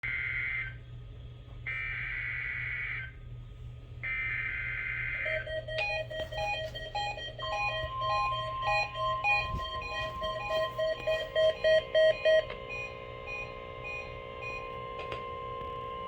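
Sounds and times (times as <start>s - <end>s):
steady low hum: 0.0s - 16.0s
short beeping tones: 5.3s - 14.7s.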